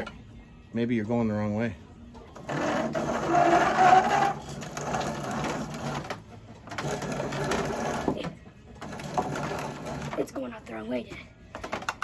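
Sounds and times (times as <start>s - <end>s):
grain mill grinding corn: 2.4s - 6.1s, 6.7s - 8.2s, 8.8s - 10.2s.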